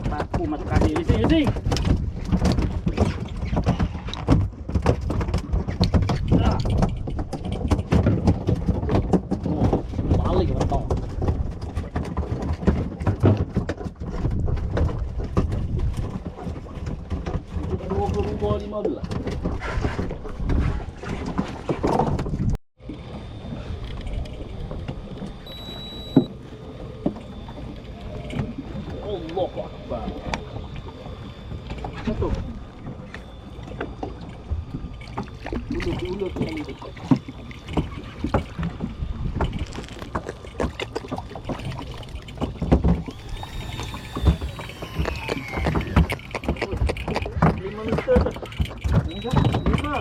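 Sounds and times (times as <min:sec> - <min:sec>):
wind noise: 0:00.0 - 0:18.6
boat engine: 0:00.0 - 0:50.0
water slapping hull: 0:00.0 - 0:50.0
faint falling whine: 0:22.8 - 0:40.1
short high beep: 0:25.4 - 0:26.3, 0:49.1 - 0:50.0.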